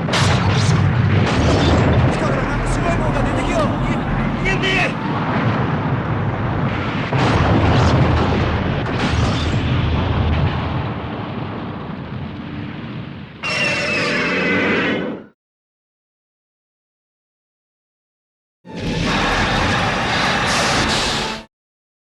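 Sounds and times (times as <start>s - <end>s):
deep explosion-like rumble: 0.0s - 13.5s, 18.7s - 21.2s.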